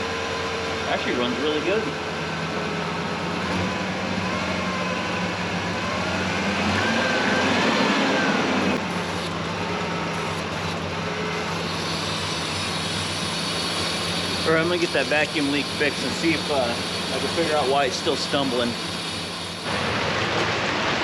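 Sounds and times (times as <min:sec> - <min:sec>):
car engine idling: 0:00.0 - 0:06.6.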